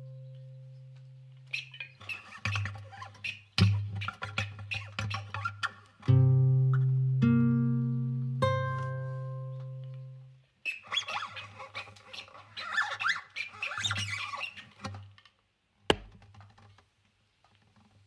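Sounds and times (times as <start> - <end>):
sharp tap: 15.9 - 16.2.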